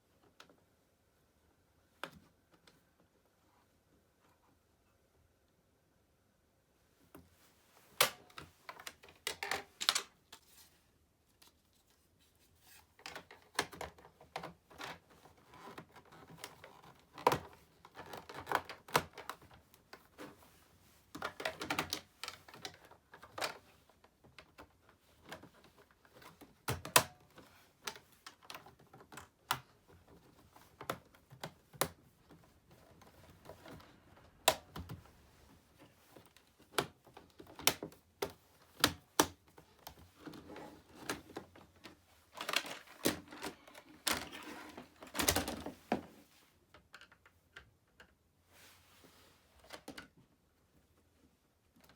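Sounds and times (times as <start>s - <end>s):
plastic parts clicking and knocking: 8.0s - 10.4s, 13.0s - 20.4s, 21.1s - 35.1s, 36.1s - 46.1s.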